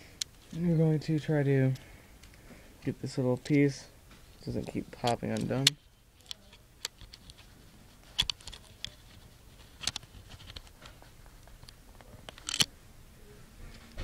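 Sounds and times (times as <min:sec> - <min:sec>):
small parts clicking together: 0:08.2 - 0:09.1, 0:09.8 - 0:10.8, 0:11.6 - 0:12.7.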